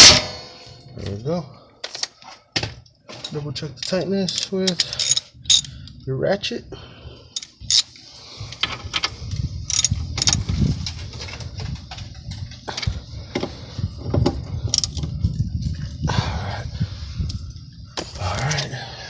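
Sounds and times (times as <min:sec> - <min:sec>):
low rumble: 0:08.4 - 0:19.0.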